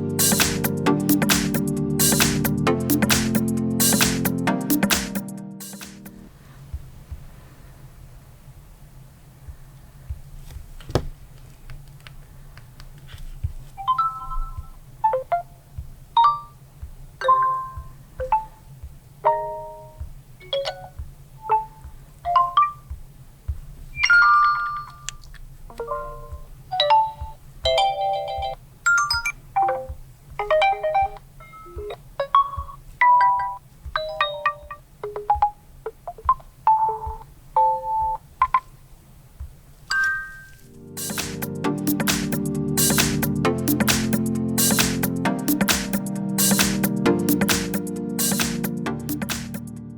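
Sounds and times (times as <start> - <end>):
phone notification chimes and blips: 13.8 - 15.5, 25.8 - 35.6.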